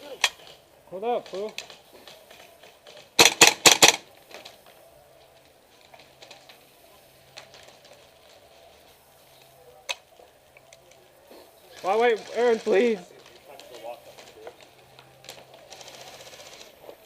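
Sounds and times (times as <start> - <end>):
airsoft gun shots: 3.2 - 4.1.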